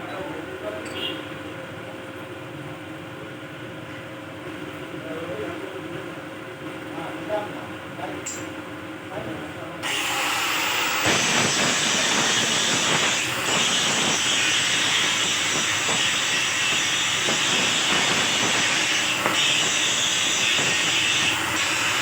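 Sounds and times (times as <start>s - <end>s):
arc welding crackling hiss: 9.8s - 22.0s.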